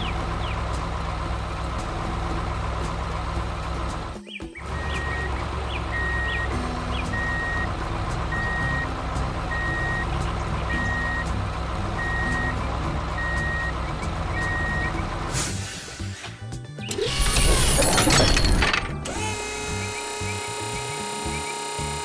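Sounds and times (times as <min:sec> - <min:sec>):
low engine rumble: 0:00.0 - 0:20.6
reversing alarm beeping: 0:04.7 - 0:15.3.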